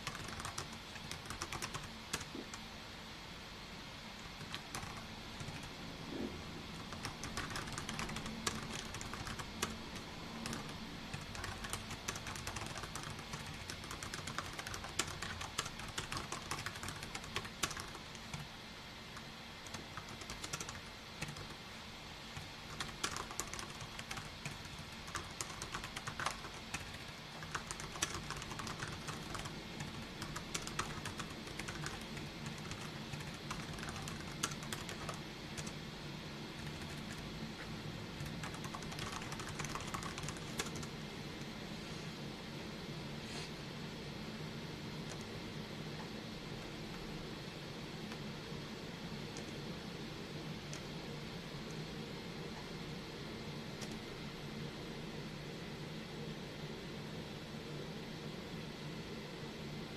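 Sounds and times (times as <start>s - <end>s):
typing on keyboard: 0.0s - 2.6s, 4.4s - 5.7s, 6.7s - 18.5s, 19.6s - 21.6s, 22.4s - 35.7s, 36.6s - 37.2s, 38.2s - 40.9s, 53.8s - 54.0s
faint low hum: 0.0s - 59.9s.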